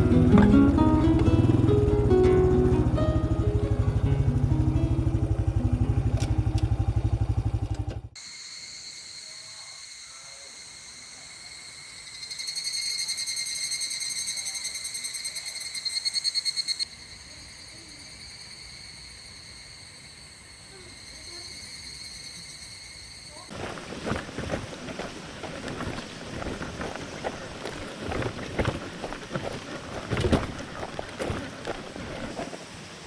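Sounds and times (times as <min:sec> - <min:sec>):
motorcycle engine running: 0:00.0 - 0:08.2
cicadas calling: 0:08.2 - 0:33.0.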